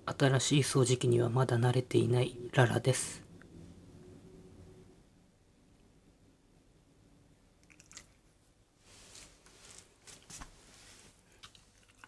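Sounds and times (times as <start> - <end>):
dog chewing and crunching: 11.4 - 12.0.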